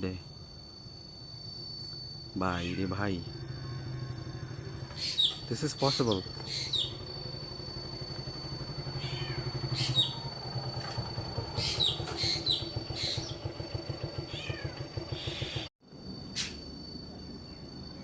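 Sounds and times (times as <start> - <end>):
low engine-like drone: 0.0 - 18.0
bird mewing call: 2.5 - 3.0, 4.4 - 7.1, 8.9 - 10.3, 11.6 - 13.5, 14.3 - 15.7.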